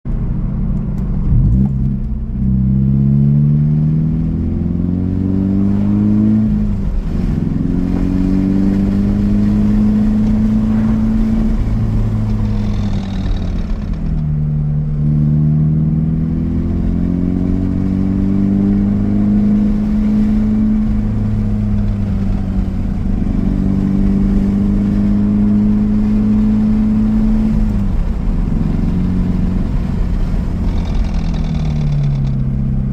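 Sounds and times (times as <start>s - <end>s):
car engine while driving: 0.1s - 32.9s
brake rattle: 9.7s - 14.8s, 29.6s - 32.9s.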